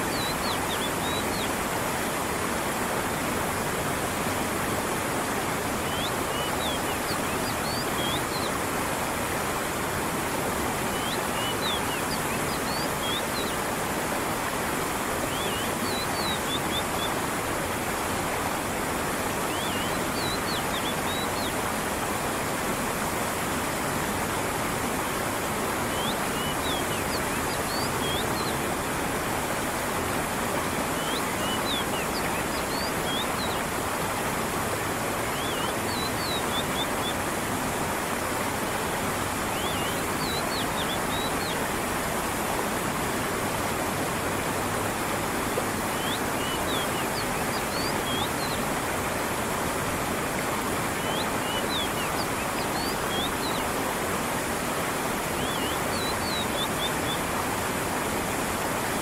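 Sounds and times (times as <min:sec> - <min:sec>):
stream rushing: 0:00.0 - 0:59.0
small birds chirping: 0:05.8 - 0:08.6, 0:10.9 - 0:13.7, 0:15.3 - 0:17.1, 0:19.5 - 0:21.6, 0:25.8 - 0:28.7, 0:30.8 - 0:33.7, 0:35.2 - 0:37.2, 0:39.4 - 0:41.7, 0:45.9 - 0:48.6, 0:50.8 - 0:53.8, 0:55.4 - 0:57.2.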